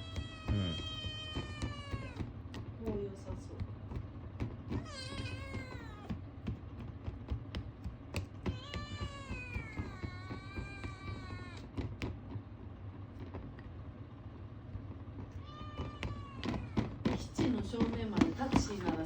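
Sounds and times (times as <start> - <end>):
kitten meowing: 0.0 - 2.3, 4.7 - 6.2, 8.4 - 11.7, 15.4 - 16.9.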